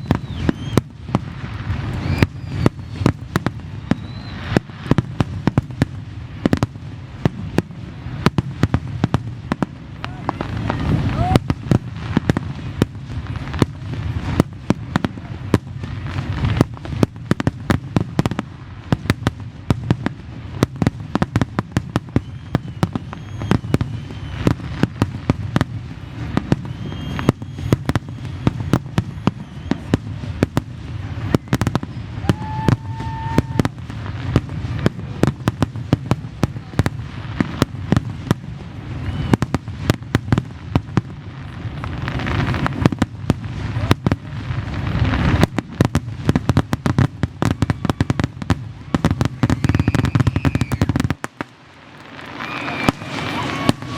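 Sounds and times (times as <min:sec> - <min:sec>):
whistling firework shells: 0:00.0 - 0:05.6, 0:21.3 - 0:34.0, 0:38.9 - 0:40.0, 0:47.2 - 0:53.9
fireworks bangs: 0:00.0 - 0:53.9.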